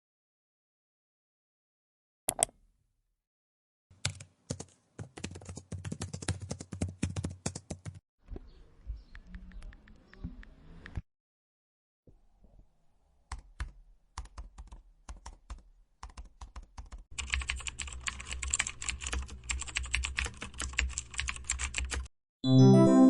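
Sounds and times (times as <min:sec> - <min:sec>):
keyboard typing clicks: 0:02.3 - 0:02.5, 0:13.3 - 0:22.1.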